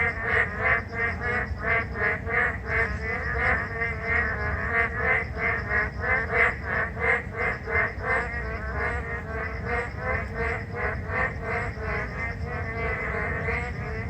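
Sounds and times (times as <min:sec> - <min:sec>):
frogs calling: 0:00.0 - 0:14.0.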